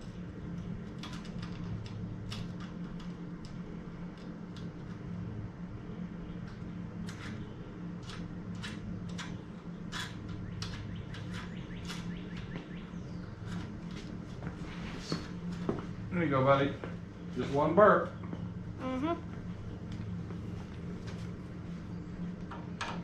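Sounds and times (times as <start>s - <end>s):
steady low hum: 0.0s - 23.0s
small birds chirping: 10.4s - 13.7s.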